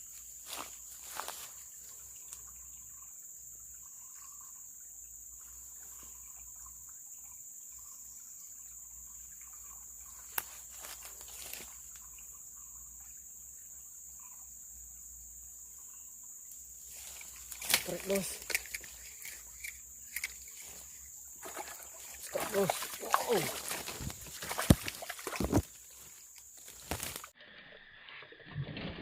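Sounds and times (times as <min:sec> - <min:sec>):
insect drone: 0:00.0 - 0:29.0
rustle: 0:10.2 - 0:12.2, 0:16.5 - 0:27.3.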